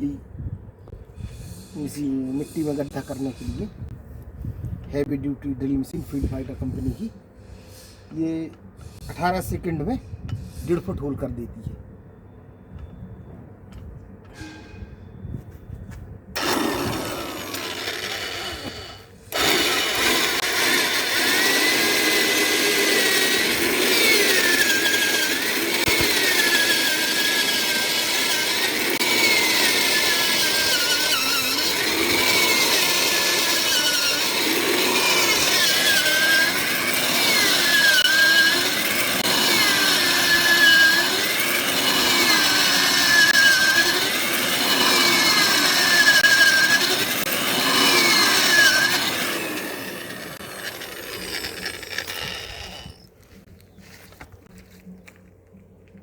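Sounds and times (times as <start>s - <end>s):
auger drill boring into soil: 16.4s - 53.1s.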